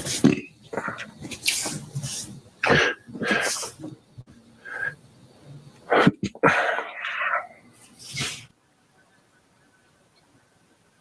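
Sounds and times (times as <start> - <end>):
person making throat noises: 2.6 - 3.9, 5.9 - 7.6.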